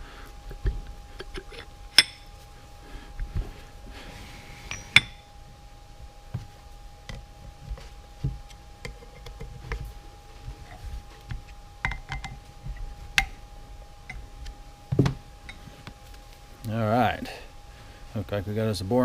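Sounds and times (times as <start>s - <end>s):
sharp metallic clinks: 4.7s - 5.3s.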